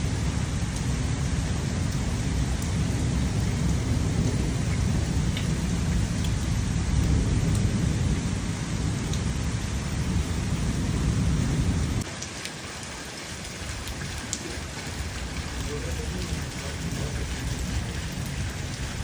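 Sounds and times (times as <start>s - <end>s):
continuous low rumble: 0.0s - 12.2s, 12.8s - 19.0s
steady rain: 0.0s - 19.0s
faint drip ticks: 3.5s - 7.7s, 12.0s - 19.0s.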